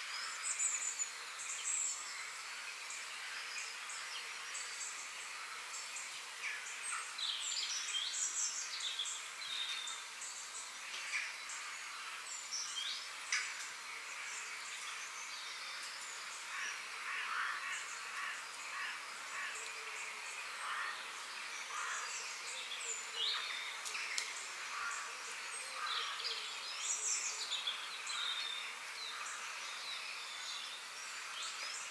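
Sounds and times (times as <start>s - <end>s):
insect hiss: 0.0s - 31.9s
birds chirping and calling: 14.3s - 31.9s.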